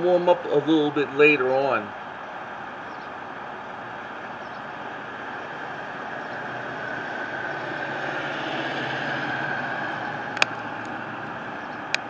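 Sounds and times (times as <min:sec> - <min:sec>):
faint high whine: 0:00.0 - 0:12.0
vehicle and street noise: 0:00.0 - 0:12.0.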